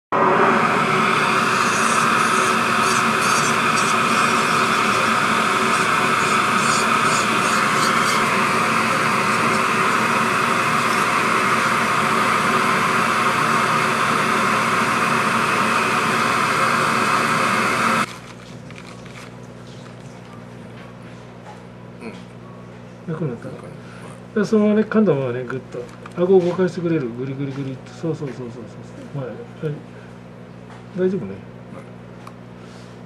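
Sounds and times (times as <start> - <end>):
machine running loudly: 0.0 - 18.2.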